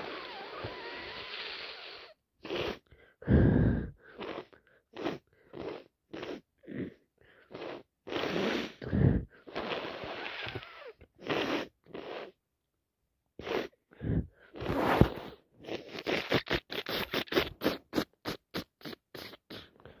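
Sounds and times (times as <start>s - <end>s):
person sniffing: 0.0s - 12.4s, 13.4s - 20.0s.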